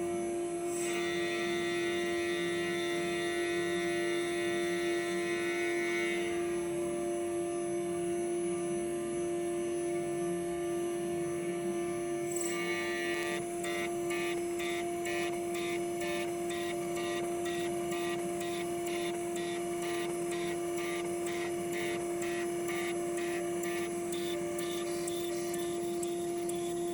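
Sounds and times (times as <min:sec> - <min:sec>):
rhythmic pulsing of a milling cut: 0:00.0 - 0:09.8, 0:10.7 - 0:26.9
milling machine spindle whine: 0:00.0 - 0:26.9.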